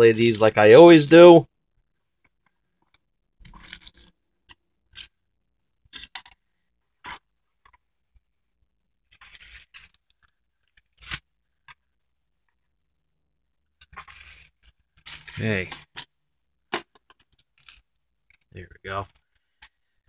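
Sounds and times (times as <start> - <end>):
objects scraping and rustling: 9.1 - 11.8, 13.8 - 16.0.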